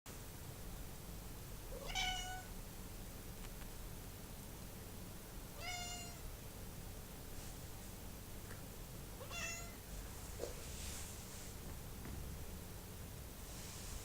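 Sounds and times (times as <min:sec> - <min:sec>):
steady low hum: 0:00.1 - 0:14.0
cat meowing: 0:01.7 - 0:02.5, 0:05.6 - 0:06.2, 0:09.2 - 0:09.8.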